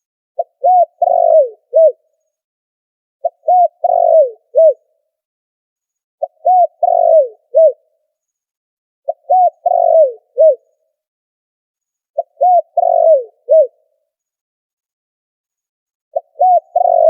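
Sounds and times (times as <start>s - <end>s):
dove cooing: 0.4s - 2.0s, 3.2s - 4.8s, 6.2s - 7.8s, 9.1s - 10.7s, 12.2s - 13.8s, 16.2s - 17.0s.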